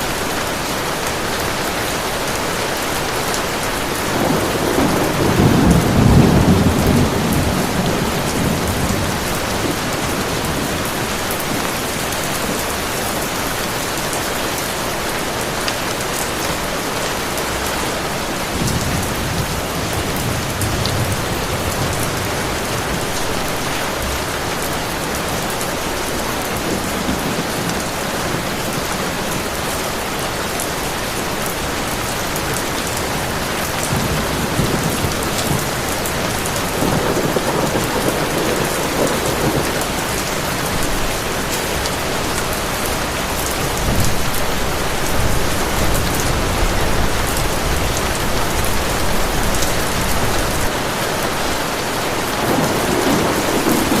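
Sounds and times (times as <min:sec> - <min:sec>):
heavy rain falling: 0:00.0 - 0:54.0
thunder rolling: 0:04.0 - 0:12.9, 0:18.5 - 0:24.4, 0:31.6 - 0:41.9, 0:52.2 - 0:54.0.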